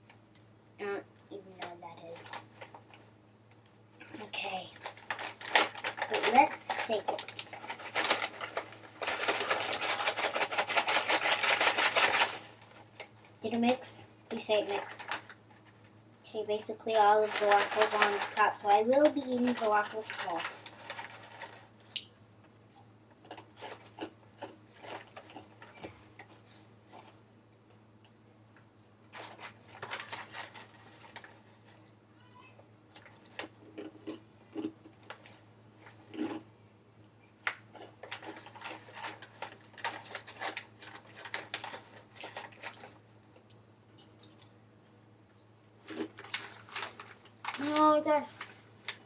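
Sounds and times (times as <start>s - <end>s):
snack bag crinkling: 4.2s - 15.9s, 17.1s - 22.1s, 23.2s - 27.2s, 29.1s - 31.8s, 37.4s - 43.5s, 45.8s - 49.0s
crisps being crunched: 4.2s - 16.0s, 16.9s - 22.2s, 23.1s - 27.2s, 29.0s - 31.8s, 32.9s - 36.5s, 37.4s - 43.5s, 45.8s - 49.0s.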